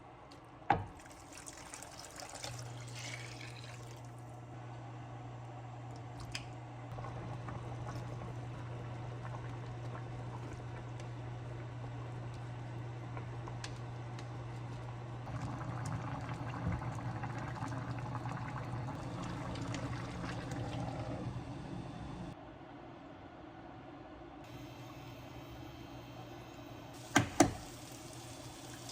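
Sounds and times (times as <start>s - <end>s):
tap water running into sink: 0.8s - 4.2s, 27.0s - 28.9s.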